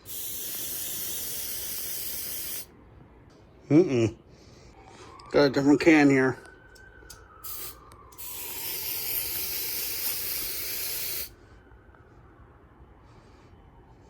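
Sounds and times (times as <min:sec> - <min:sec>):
aerosol spray hissing: 0:00.0 - 0:02.7, 0:07.5 - 0:11.3.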